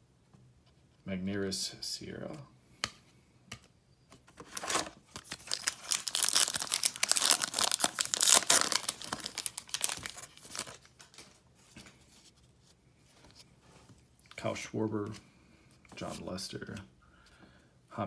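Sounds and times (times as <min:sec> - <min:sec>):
wrapper tearing and crinkling: 0:04.4 - 0:11.3.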